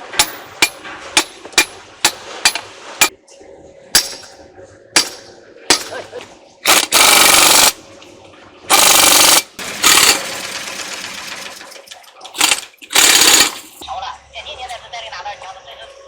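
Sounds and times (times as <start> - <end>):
impact wrench hammering: 0.0 - 2.7, 4.0 - 4.3, 5.0 - 6.0, 6.7 - 7.8, 8.7 - 11.6, 12.4 - 13.8.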